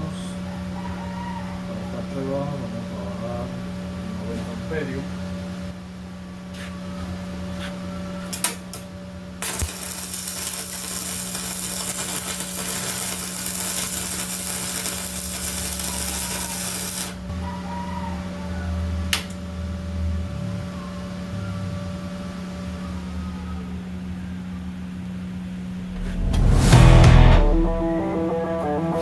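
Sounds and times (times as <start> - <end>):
welder machine hum: 8.3 - 17.3
welding arc crackling hiss: 9.4 - 17.3.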